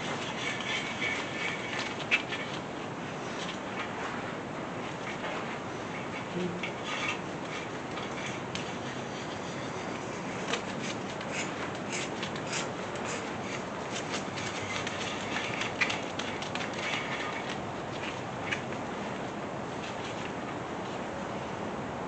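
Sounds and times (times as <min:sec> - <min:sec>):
metallic clicks and scraping: 0:00.0 - 0:02.7, 0:04.8 - 0:19.2.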